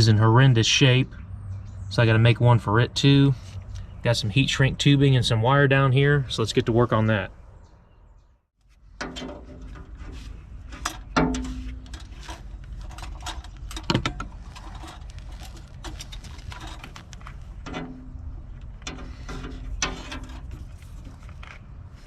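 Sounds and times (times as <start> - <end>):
metal parts clinking and clanking: 10.7 - 21.6.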